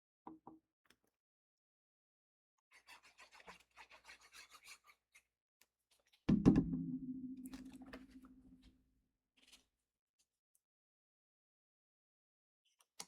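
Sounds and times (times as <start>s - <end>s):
thump with low ringing: 6.3s - 7.6s.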